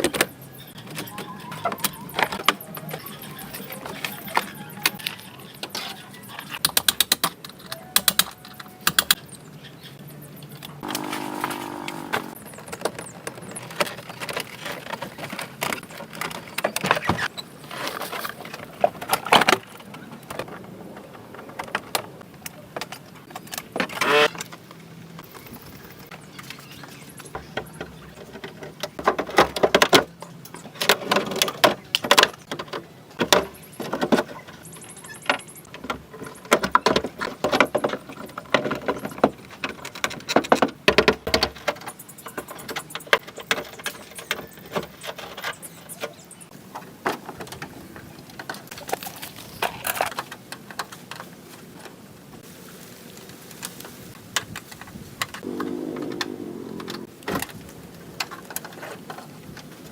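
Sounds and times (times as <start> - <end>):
brief pitched hum: 10.8 - 12.4.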